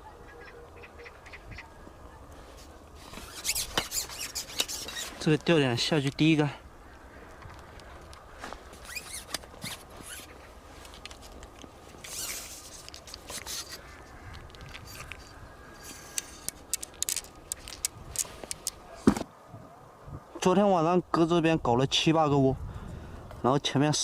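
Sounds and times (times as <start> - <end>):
fishing tackle rustling and scraping: 2.4 - 6.4, 7.3 - 19.3
sharp clicks: 16.1 - 18.8.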